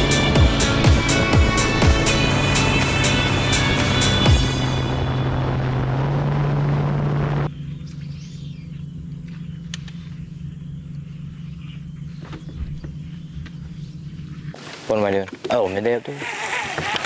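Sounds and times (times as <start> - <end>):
outboard motor running: 0.0 - 7.4, 14.6 - 17.0
low hum: 0.0 - 14.5.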